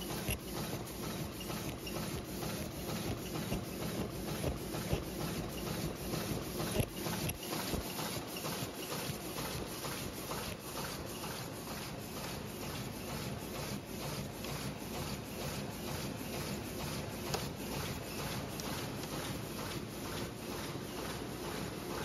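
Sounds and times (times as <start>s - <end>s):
machine clattering rhythmically: 0.0s - 22.0s.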